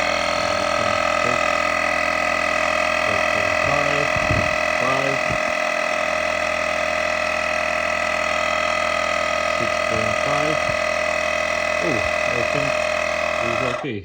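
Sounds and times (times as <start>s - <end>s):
air compressor whining: 0.0s - 14.0s.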